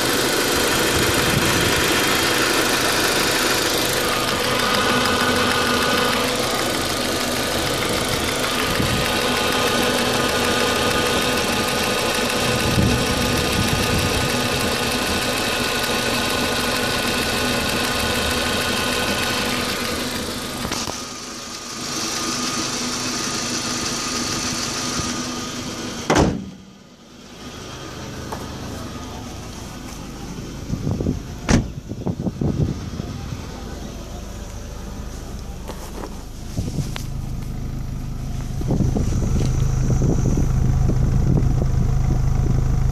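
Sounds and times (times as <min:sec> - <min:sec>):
car engine idling roughly: 0:00.0 - 0:42.9
sharp thump: 0:26.1 - 0:26.7, 0:31.4 - 0:31.8.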